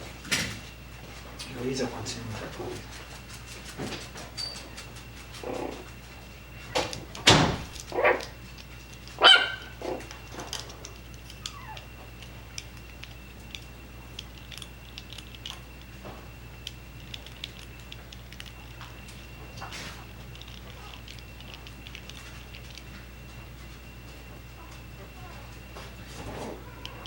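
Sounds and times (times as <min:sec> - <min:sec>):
dog barking: 0:07.9 - 0:08.4, 0:09.2 - 0:10.1.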